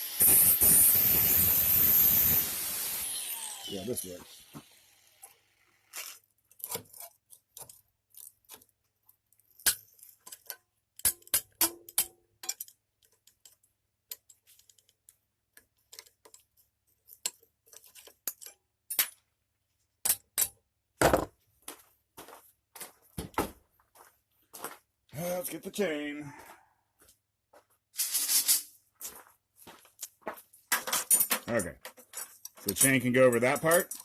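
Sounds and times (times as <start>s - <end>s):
metallic clinks and knocks: 9.4s - 19.2s, 30.0s - 34.0s.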